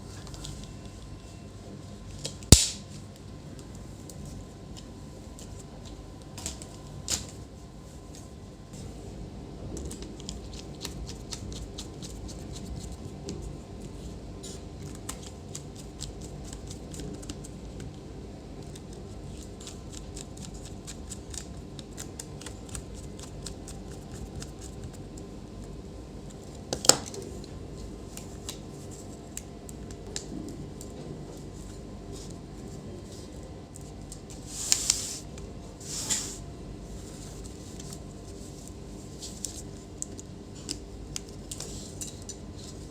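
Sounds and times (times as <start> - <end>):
steady low hum: 0.0 - 42.9
sharp plastic snap: 2.5 - 2.9.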